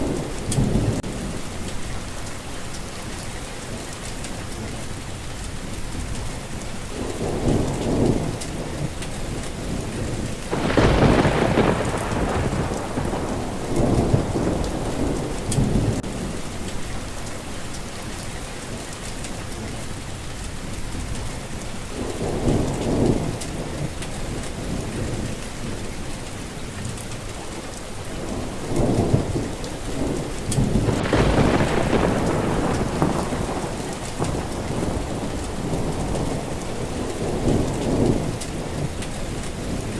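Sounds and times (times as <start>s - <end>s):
steady rain: 0.0s - 39.9s
thunder rumbling: 0.0s - 39.9s.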